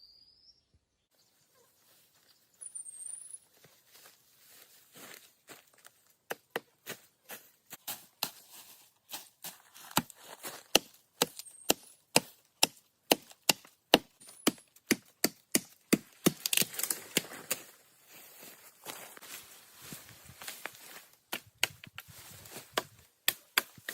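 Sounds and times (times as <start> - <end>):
wood being chopped: 9.9 - 17.6, 21.3 - 22.1, 22.7 - 23.9.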